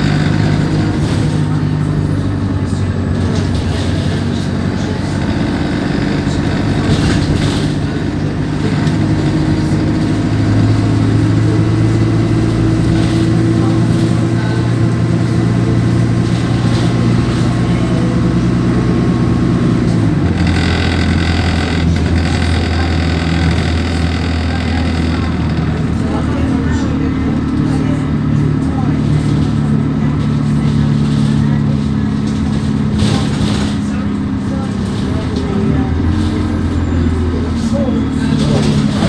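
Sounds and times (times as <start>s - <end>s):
bus diesel engine drone: 0.0s - 39.0s.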